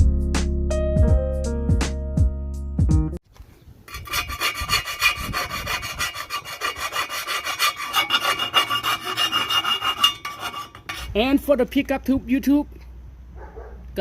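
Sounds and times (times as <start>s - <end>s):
saw cutting sheet metal: 3.9s - 11.2s.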